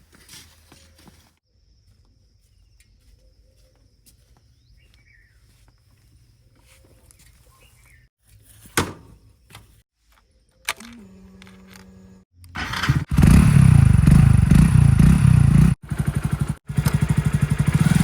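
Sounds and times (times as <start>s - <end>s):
bird chirps: 2.4s - 8.1s.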